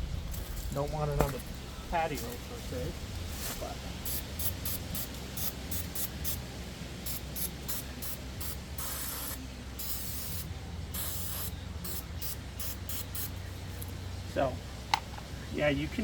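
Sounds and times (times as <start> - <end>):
aerosol can spraying: 4.0 - 6.4, 7.0 - 13.4.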